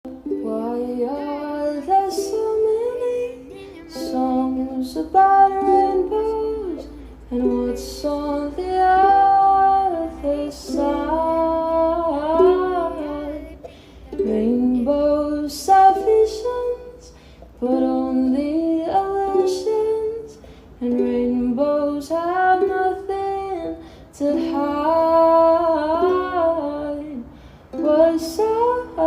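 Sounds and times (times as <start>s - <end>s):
plucked ukulele: 0.0s - 29.0s
woman singing slow song: 0.1s - 29.0s.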